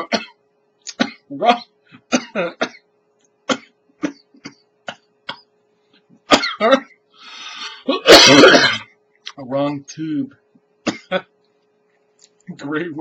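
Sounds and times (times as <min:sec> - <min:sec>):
man coughing and choking: 0:00.0 - 0:02.8, 0:03.5 - 0:05.5, 0:06.3 - 0:06.9, 0:07.8 - 0:08.9, 0:10.9 - 0:11.3.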